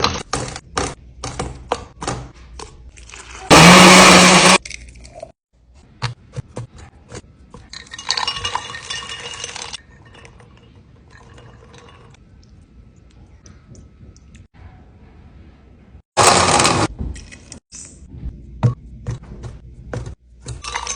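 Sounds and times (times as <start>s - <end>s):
blender motor: 3.5s - 4.6s, 16.2s - 16.9s
utensils clinking on glassware: 7.7s - 12.2s, 20.5s - 20.9s
liquid being poured: 7.8s - 13.0s.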